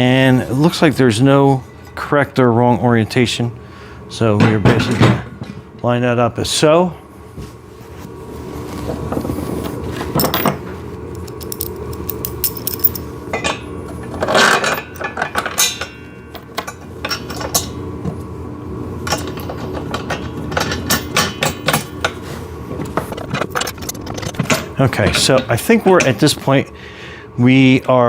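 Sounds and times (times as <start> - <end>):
metal bolts clinking and clanking: 11.2 - 17.8.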